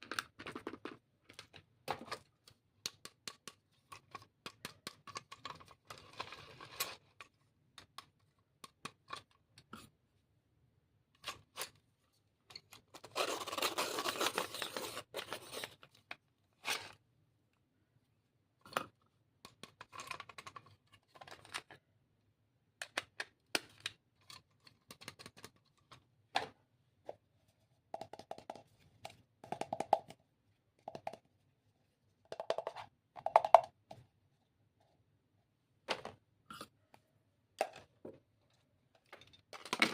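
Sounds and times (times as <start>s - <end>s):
clicks and taps: 2.8s - 5.7s, 22.8s - 25.7s, 27.9s - 30.2s, 30.8s - 31.3s, 32.3s - 34.0s.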